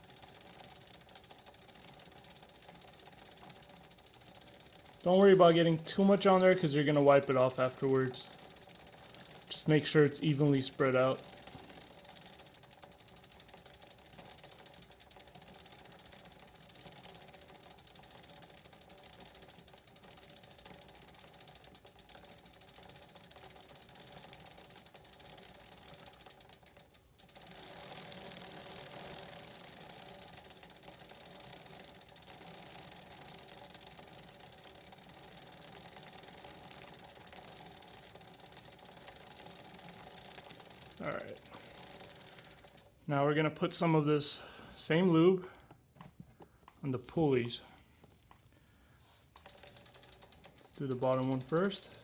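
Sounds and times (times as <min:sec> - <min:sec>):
bicycle freewheel clicking: 0:00.0 - 0:52.0.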